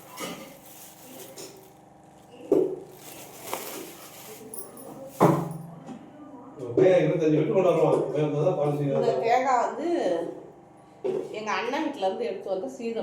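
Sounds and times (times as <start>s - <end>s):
kitchen items knocking and clinking: 0.0s - 1.8s, 2.5s - 5.8s.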